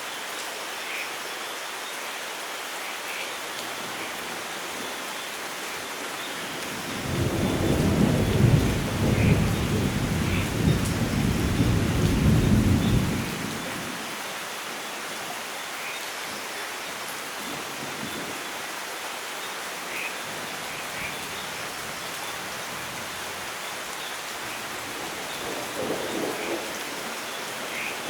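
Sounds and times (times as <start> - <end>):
steady light rain: 0.0 - 28.0
low rumble of thunder: 6.9 - 13.9, 24.9 - 28.0.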